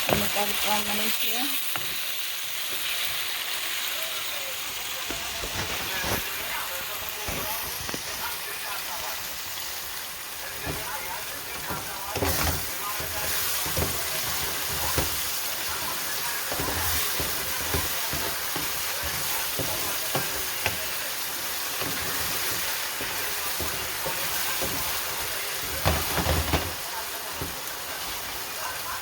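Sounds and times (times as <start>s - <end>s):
spices frying with sizzle: 0.0s - 29.0s
spoon knocking against pot: 10.6s - 21.0s.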